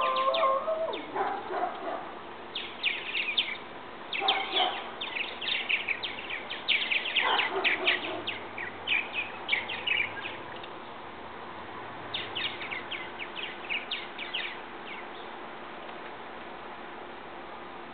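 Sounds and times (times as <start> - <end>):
steady background hiss: 0.0 - 17.9
purple martins chirping: 2.5 - 10.9, 12.1 - 15.3.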